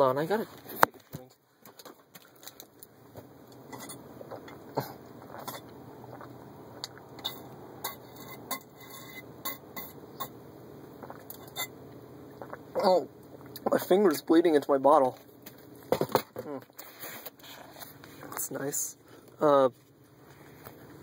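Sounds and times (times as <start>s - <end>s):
steady low hiss: 2.6s - 16.1s.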